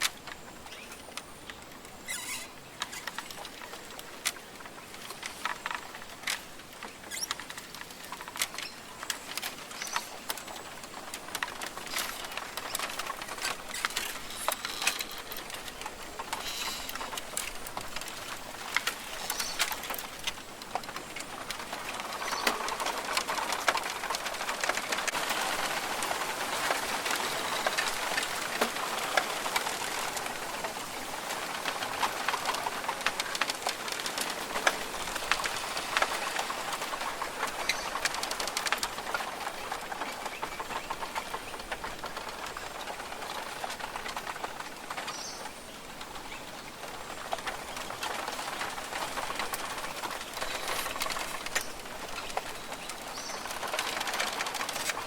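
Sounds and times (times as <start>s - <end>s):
birds calling: 0.0s - 6.0s, 6.8s - 20.2s, 44.9s - 54.7s
steady hiss with sharp ticks: 0.0s - 55.0s.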